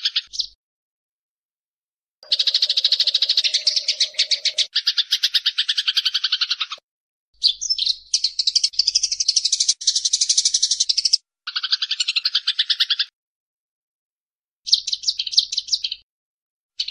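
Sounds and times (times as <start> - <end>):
sparrows chattering: 0.0 - 0.6, 2.2 - 6.8, 7.4 - 13.1, 14.7 - 16.0.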